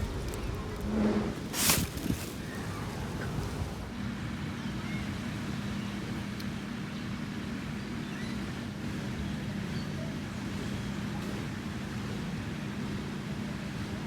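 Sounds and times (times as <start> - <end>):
rushing background noise: 0.0 - 3.9.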